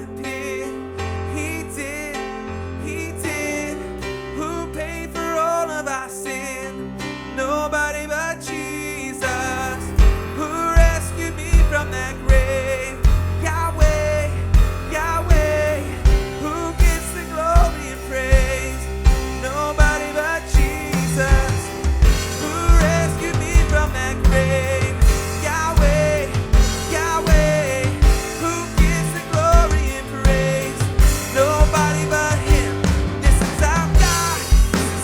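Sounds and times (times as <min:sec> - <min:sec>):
person singing: 0:00.0 - 0:35.0
piano: 0:00.0 - 0:35.0
drum kit beat: 0:10.0 - 0:35.0.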